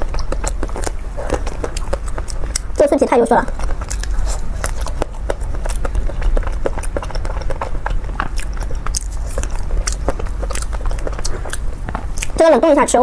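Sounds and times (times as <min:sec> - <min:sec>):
crunching and chewing pastry: 0:00.0 - 0:13.0.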